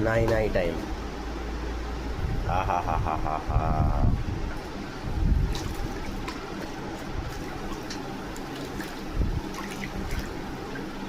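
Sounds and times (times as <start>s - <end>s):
water running and splashing: 7.0s - 11.0s.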